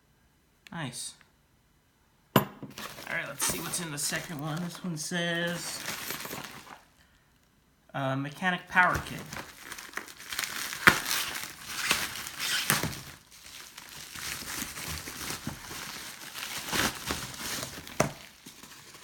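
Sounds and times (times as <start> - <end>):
plastic packaging crinkling: 2.7 - 7.0, 8.4 - 19.0.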